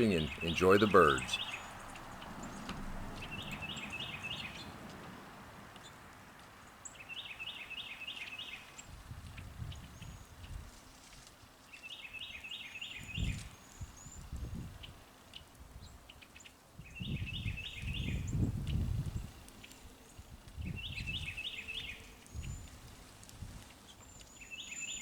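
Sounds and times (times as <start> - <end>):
small birds chirping: 0.0 - 5.2, 11.7 - 25.0
low bumps: 0.0 - 5.4
songbird singing: 0.0 - 8.9, 11.7 - 15.0, 15.8 - 22.9, 23.7 - 25.0.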